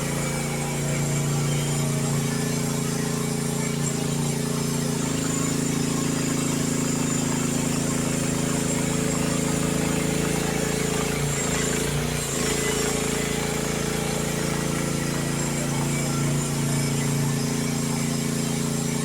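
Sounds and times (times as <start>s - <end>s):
mini excavator engine running: 0.0s - 19.0s.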